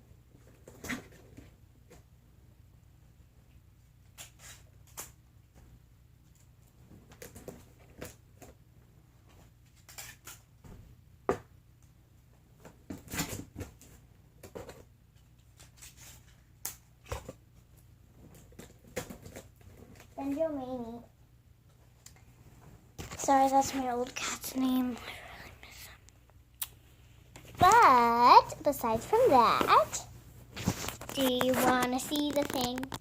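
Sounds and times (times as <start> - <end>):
cardboard and tape rustling: 12.6 - 20.9, 23.0 - 26.0, 27.4 - 33.0.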